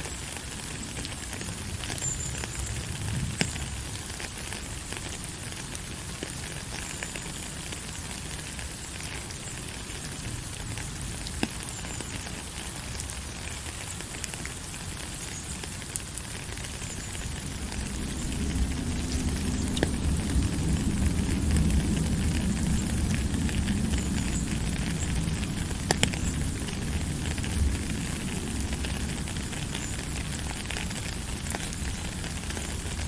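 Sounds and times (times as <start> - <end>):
rain drop ticks: 0.0 - 33.0
steady rain falling: 0.0 - 33.0
low rumble: 17.2 - 29.3.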